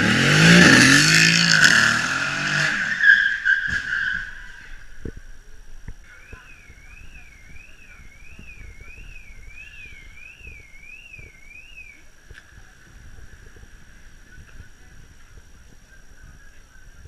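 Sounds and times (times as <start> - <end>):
low road rumble: 0.0 - 17.0
electronic siren wailing: 6.2 - 12.0.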